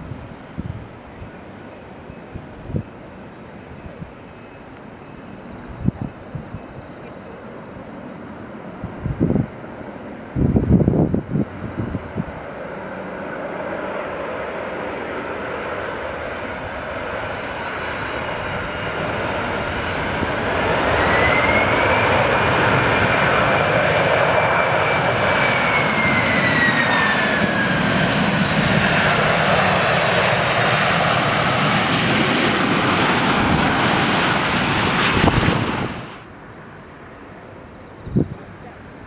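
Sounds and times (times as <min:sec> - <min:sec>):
high engine whine: 0:07.2 - 0:37.8
jet engines roaring: 0:07.2 - 0:39.0.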